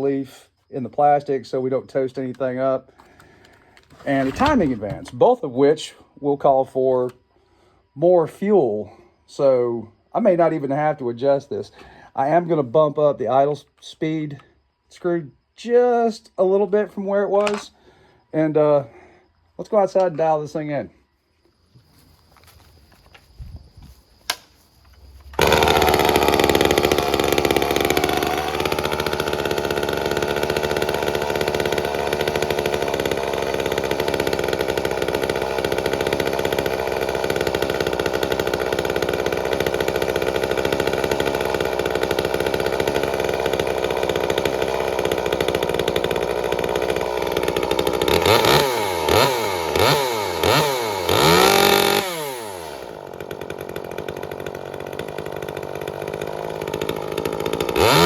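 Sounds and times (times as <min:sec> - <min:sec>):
chainsaw running: 0:01.0 - 0:05.3, 0:24.2 - 0:58.0
chainsaw throttle blips: 0:02.2 - 0:05.2, 0:24.3 - 0:58.0.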